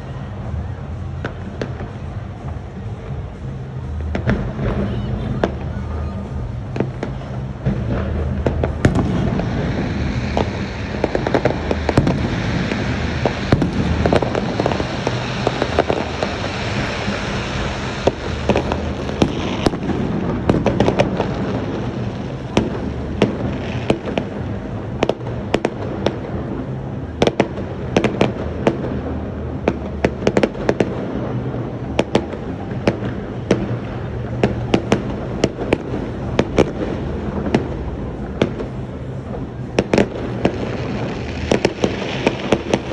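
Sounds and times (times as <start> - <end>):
fireworks bangs and crackling: 0.0 - 42.9
steady low drone: 0.0 - 42.9.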